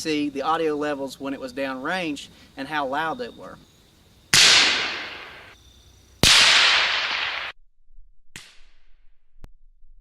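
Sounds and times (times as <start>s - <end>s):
rifle shots echoing: 4.3s - 5.6s, 6.2s - 7.6s
quiet gunshot crack: 6.2s - 7.5s.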